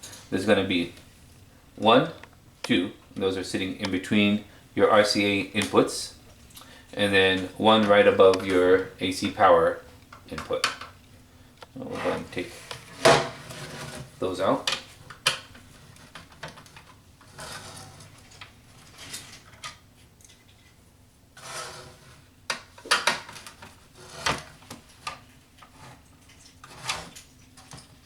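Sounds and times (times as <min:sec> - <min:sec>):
metal scraping on panel: 0:11.8 - 0:14.2, 0:17.2 - 0:19.5, 0:21.4 - 0:22.3, 0:23.9 - 0:24.6, 0:25.6 - 0:27.7.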